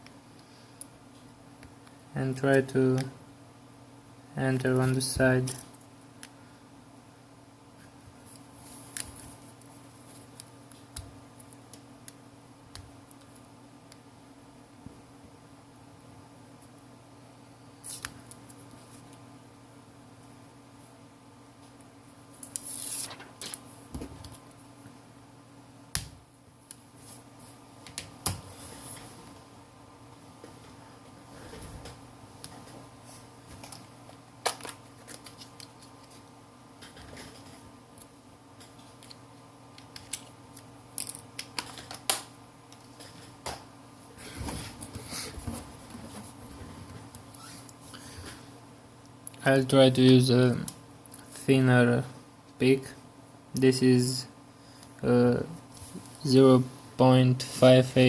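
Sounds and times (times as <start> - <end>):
faint steady hum: 0.0 - 58.0.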